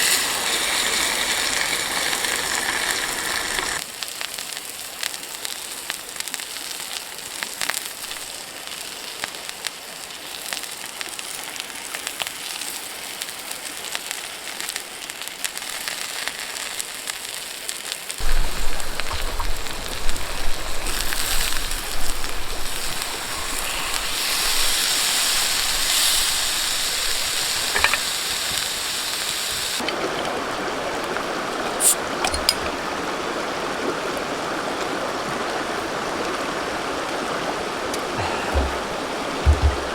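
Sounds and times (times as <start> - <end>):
flowing stream: 0.0 - 3.8, 18.2 - 39.9
steady hiss with light crackles: 0.0 - 33.9.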